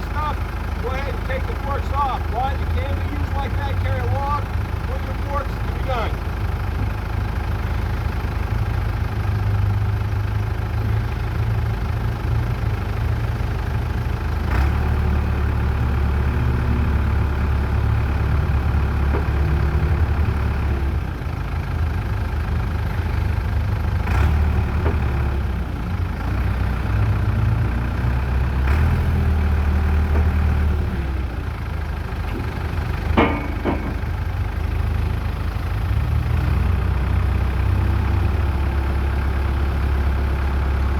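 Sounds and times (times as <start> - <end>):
diesel engine running: 0.0 - 40.9
sharp knocks: 33.1 - 34.3.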